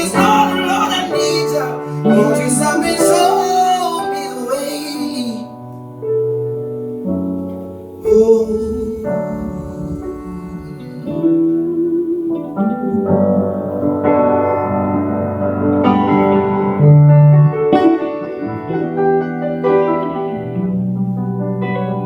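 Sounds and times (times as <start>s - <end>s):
piano playing held chords: 0.0s - 22.0s
low bass note: 8.0s - 12.8s.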